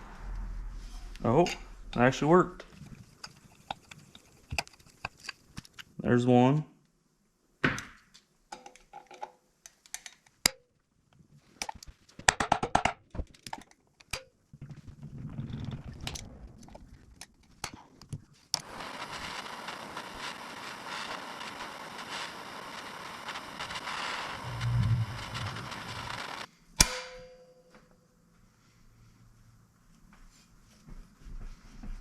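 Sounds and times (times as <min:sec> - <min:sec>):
steady rushing noise: 0:00.0 - 0:03.6, 0:18.6 - 0:26.5.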